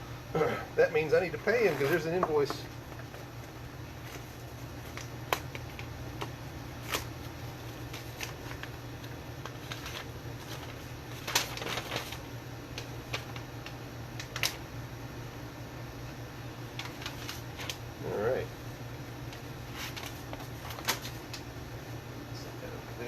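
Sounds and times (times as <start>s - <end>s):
steady low hum: 0.0s - 23.0s
packaging crinkling: 1.0s - 14.7s, 16.7s - 17.9s, 19.3s - 21.5s.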